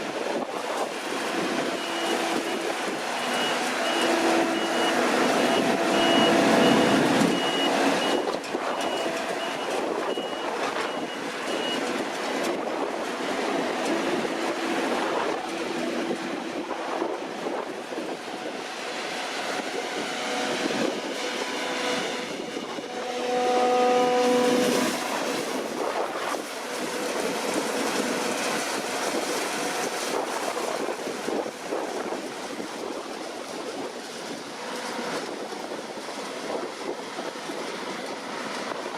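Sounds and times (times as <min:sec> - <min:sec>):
combine harvester running: 0:00.0 - 0:38.9
reversing alarm beeping: 0:01.7 - 0:11.9.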